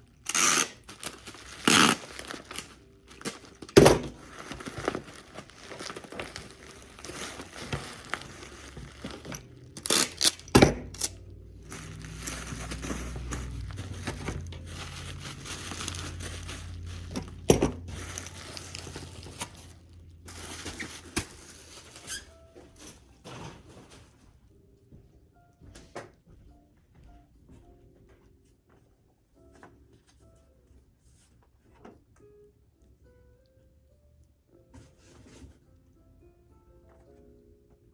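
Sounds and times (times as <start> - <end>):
packing material crinkling: 0.0 - 24.2.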